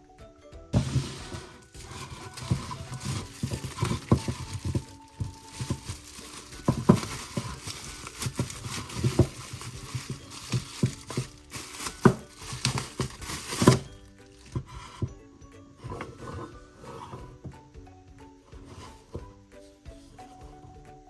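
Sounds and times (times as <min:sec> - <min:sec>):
background music: 0:00.0 - 0:21.0
packaging crinkling: 0:00.8 - 0:14.7.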